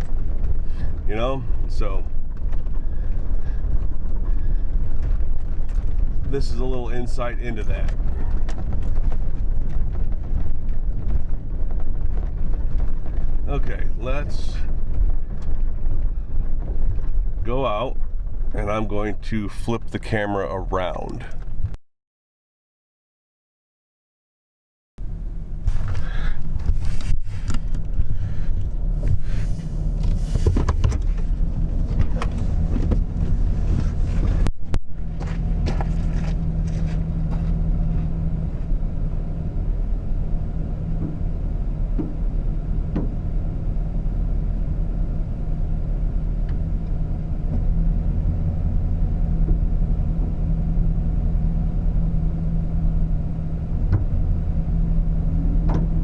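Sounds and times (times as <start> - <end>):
truck engine and road hum: 0.0 - 21.8, 25.0 - 56.0
knocks and rattles: 25.0 - 51.5.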